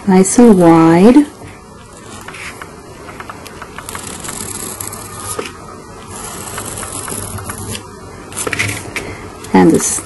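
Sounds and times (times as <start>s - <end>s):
pencil scratching on sandpaper: 3.8s - 5.5s, 6.1s - 7.8s.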